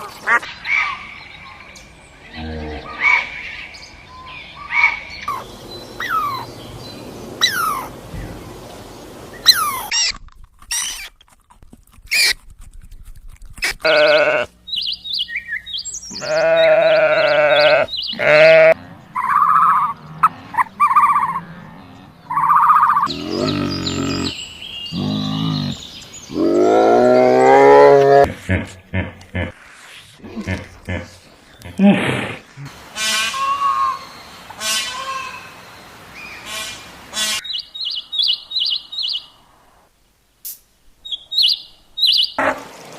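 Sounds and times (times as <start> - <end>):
sheep or goats bleating: 13.8 - 14.5, 16.1 - 18.8.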